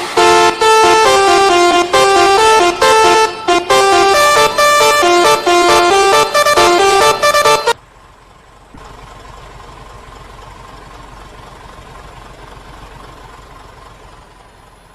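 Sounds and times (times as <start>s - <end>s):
multi-tone bus horn melody: 0.0s - 7.8s
bus engine idling: 0.0s - 14.9s.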